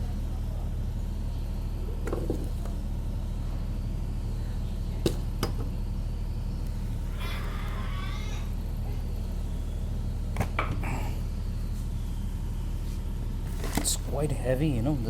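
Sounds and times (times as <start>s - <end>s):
steady low hum: 0.0s - 15.0s
cat meowing: 7.0s - 9.0s.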